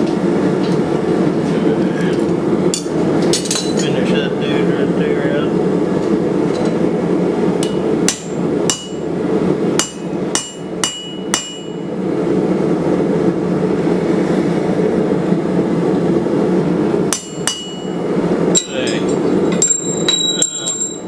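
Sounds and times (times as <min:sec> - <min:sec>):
hammer striking steel on anvil: 0:07.6 - 0:09.0, 0:09.8 - 0:11.8, 0:17.1 - 0:18.0, 0:18.6 - 0:21.0.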